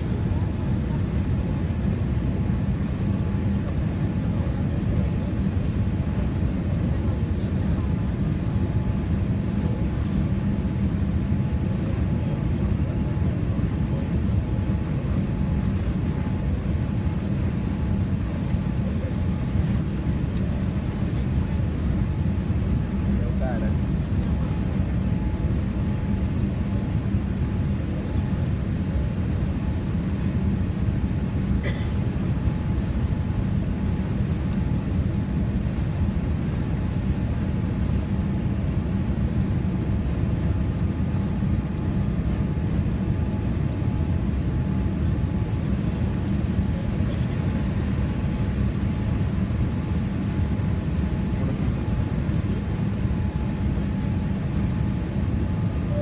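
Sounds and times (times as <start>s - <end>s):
airplane cabin engine rumble: 0.0s - 56.0s
faint steady tone: 55.6s - 56.0s.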